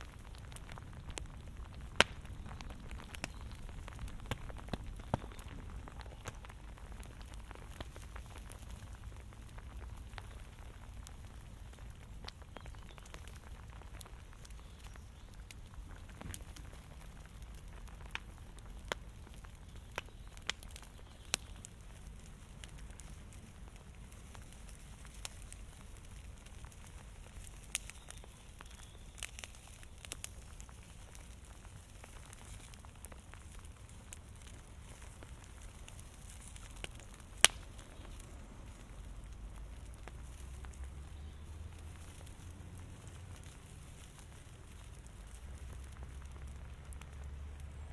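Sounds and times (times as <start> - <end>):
low steady rumble: 0.0 - 12.4
fire crackling and popping: 0.0 - 47.9.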